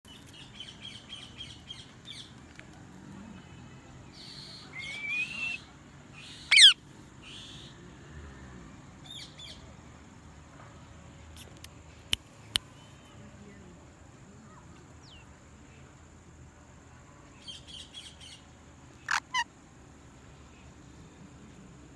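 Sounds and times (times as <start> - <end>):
parrot calling: 6.5 - 6.8, 19.0 - 19.5.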